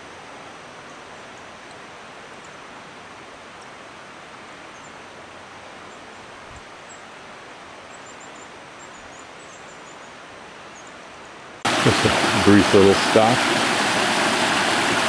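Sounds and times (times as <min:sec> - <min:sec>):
woodland rushing noise: 0:10.2 - 0:15.0.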